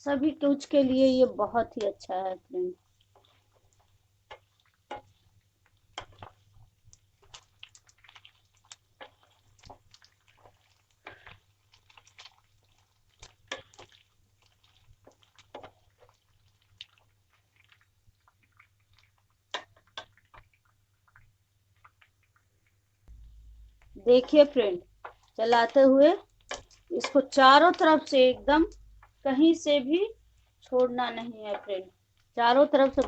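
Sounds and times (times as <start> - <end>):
nuts clicking against a pan: 4.3 - 5.1, 23.1 - 27.8
faint low hum: 23.1 - 25.1.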